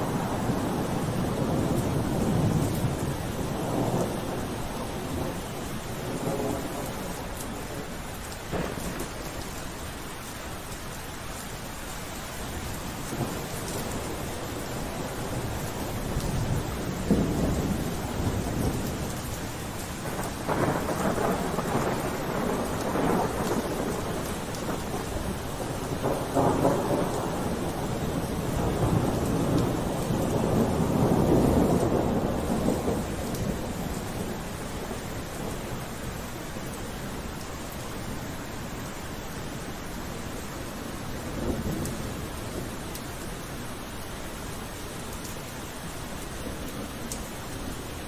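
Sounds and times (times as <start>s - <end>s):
thunder rumbling: 0.0s - 9.5s, 13.0s - 36.4s, 41.0s - 43.0s
steady rain: 0.0s - 48.0s.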